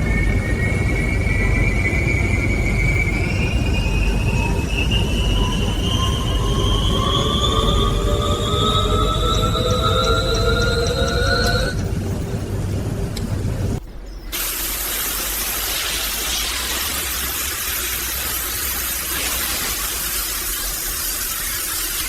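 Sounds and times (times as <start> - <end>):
high hiss of rushing air: 14.3 - 22.0.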